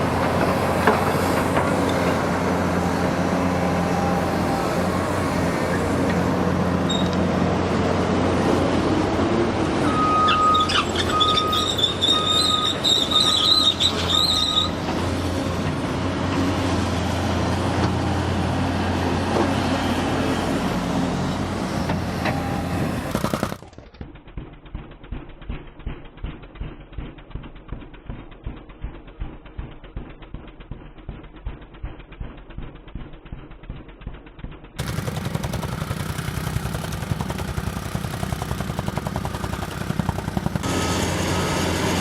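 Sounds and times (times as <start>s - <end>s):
diesel machine running: 0.0s - 42.0s
high metallic squeal: 6.9s - 7.2s, 9.8s - 14.8s
reverse alarm beeping: 9.8s - 14.8s.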